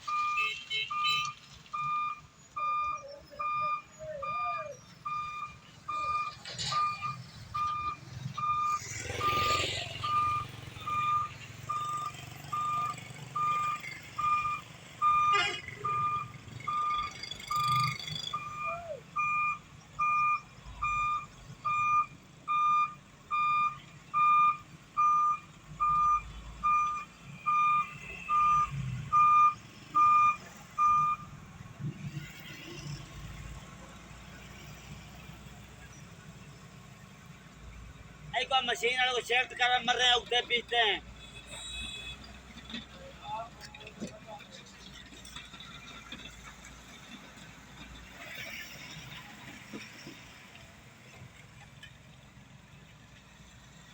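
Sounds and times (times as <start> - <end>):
reversing alarm beeping: 0.0 - 31.4.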